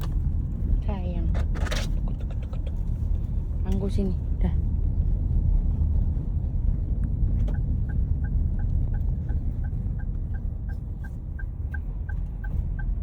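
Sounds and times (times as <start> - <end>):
car engine and road rumble: 0.0 - 13.0
turn signal ticking: 6.9 - 13.0.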